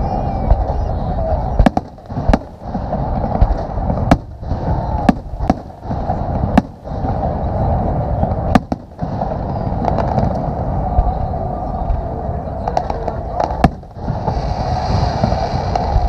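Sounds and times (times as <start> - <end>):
low rumble of fireworks: 0.0 - 16.0
firework shells bursting: 1.6 - 7.2, 12.7 - 16.0.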